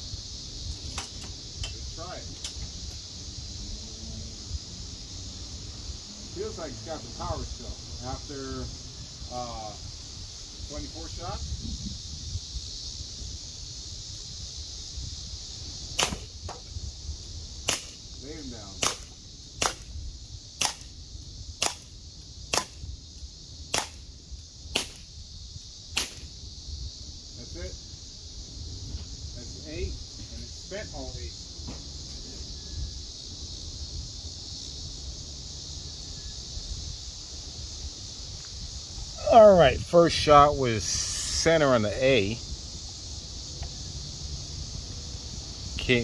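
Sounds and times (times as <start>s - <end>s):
high-pitched hiss: 0.0s - 46.0s
insect chorus drone: 0.0s - 46.0s
wind rumble on microphone: 0.0s - 46.0s
pellet pistol shots: 16.0s - 16.3s, 17.6s - 18.0s, 18.8s - 19.9s, 20.6s - 20.9s, 22.5s - 22.8s, 23.7s - 24.0s, 24.8s - 25.0s, 26.0s - 26.3s.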